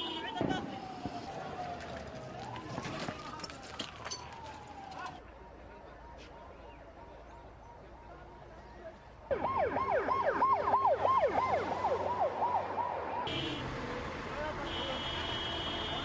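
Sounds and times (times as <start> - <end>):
siren in fast yelp mode: 9.3 - 13.3.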